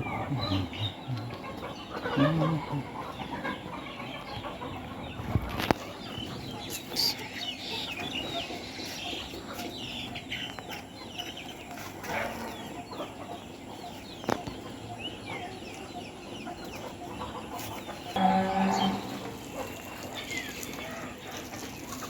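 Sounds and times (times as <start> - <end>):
small birds chirping: 0.0 - 22.0
cow mooing: 18.2 - 19.4.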